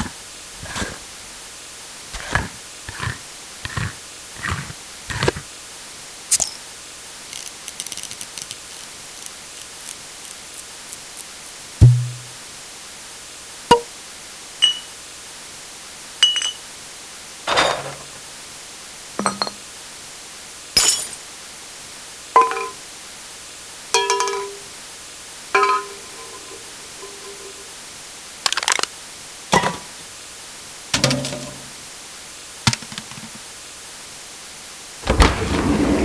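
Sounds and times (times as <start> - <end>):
cans and bottles clinking: 16.2 - 16.6, 17.5 - 18.2, 19.2 - 19.7, 20.8 - 21.2, 22.4 - 22.8, 24.0 - 24.7, 25.6 - 27.7, 29.6 - 30.0, 31.0 - 31.8, 32.7 - 33.4.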